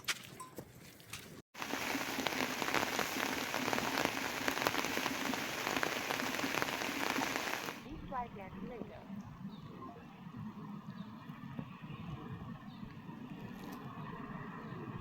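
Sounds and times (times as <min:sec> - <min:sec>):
rain pattering: 0:01.6 - 0:07.9.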